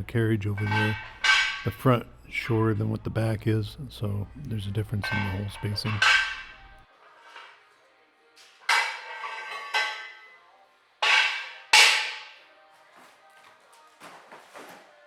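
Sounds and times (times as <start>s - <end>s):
steel posts clanking on metal: 0.0s - 2.7s, 4.6s - 7.6s, 8.6s - 10.4s, 11.0s - 12.5s.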